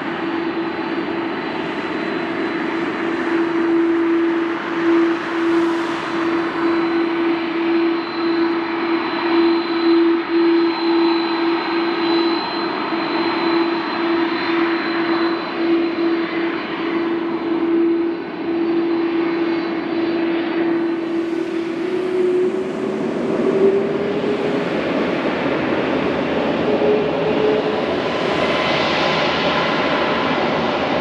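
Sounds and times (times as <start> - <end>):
jet engines at takeoff: 0.0 - 31.0
steady humming tone: 20.5 - 30.0.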